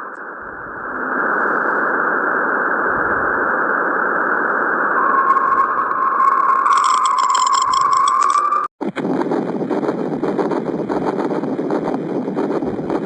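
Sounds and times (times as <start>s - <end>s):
steady whistling tone: 0.0s - 8.7s
static hiss: 8.5s - 13.0s.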